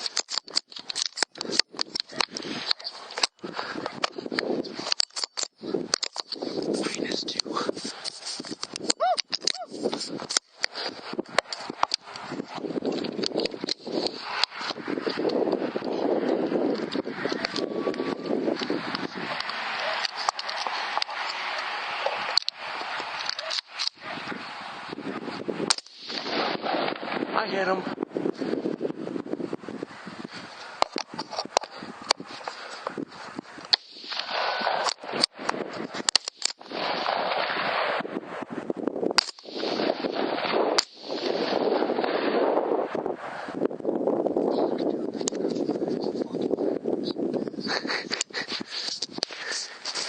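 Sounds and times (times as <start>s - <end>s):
rifle actions clicking: 0.0s - 3.4s, 33.6s - 37.5s
sharp clicks and knocks: 0.0s - 3.4s
hushed whispering: 6.7s - 8.0s
steady rushing noise: 9.7s - 44.4s.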